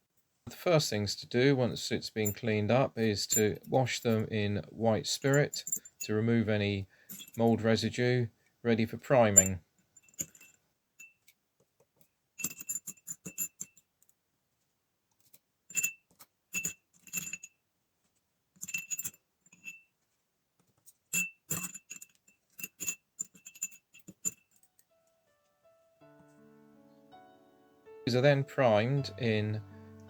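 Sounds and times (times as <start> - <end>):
small metal tools rattling in glass jar: 5.1 - 6.2, 7.0 - 7.6, 9.2 - 11.3, 12.4 - 13.9, 15.7 - 17.6, 18.6 - 19.9, 20.8 - 24.8
soft piano music: 24.7 - 30.0.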